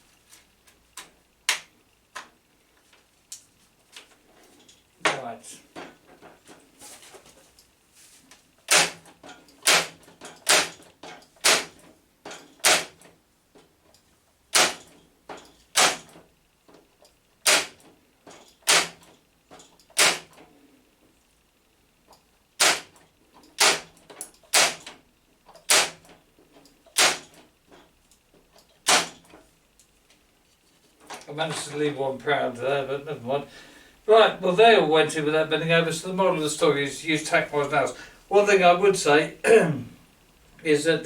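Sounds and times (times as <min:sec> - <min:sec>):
electric nailer firing nails: 0:08.7 - 0:11.8, 0:12.6 - 0:13.0, 0:14.5 - 0:15.0, 0:15.7 - 0:16.2, 0:17.4 - 0:17.9, 0:18.6 - 0:19.1, 0:19.9 - 0:20.4, 0:22.6 - 0:23.0, 0:23.6 - 0:24.9, 0:25.6 - 0:26.1, 0:26.9 - 0:27.4, 0:28.8 - 0:29.3.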